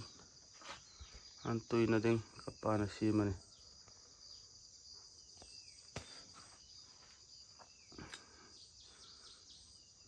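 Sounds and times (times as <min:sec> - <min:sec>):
insects chirping: 0:00.0 - 0:10.0.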